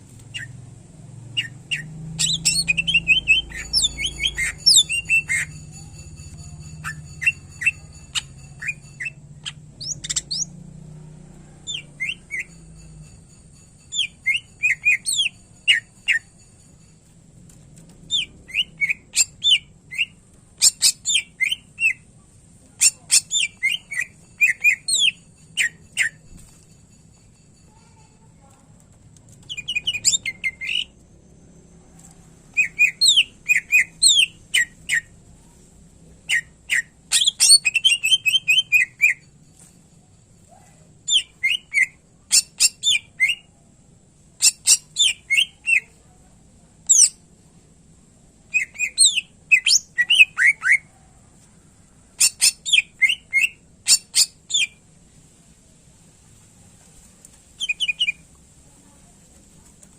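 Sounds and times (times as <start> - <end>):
bird chirping and whistling: 1.3 - 5.7, 6.8 - 10.6, 11.7 - 12.6, 13.9 - 16.2, 18.1 - 22.0, 22.8 - 26.2, 29.4 - 30.9, 32.6 - 35.1, 36.3 - 39.2, 41.1 - 43.5, 44.4 - 45.8, 46.9 - 47.2, 48.5 - 50.9, 52.2 - 54.8, 57.6 - 58.2.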